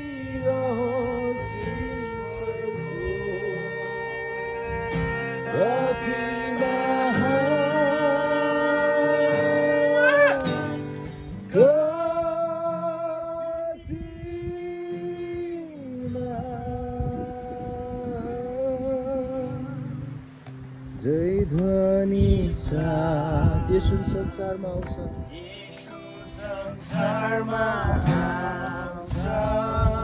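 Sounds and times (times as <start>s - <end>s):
person singing long held notes: 0.0s - 15.0s
guitar accompaniment: 0.0s - 30.0s.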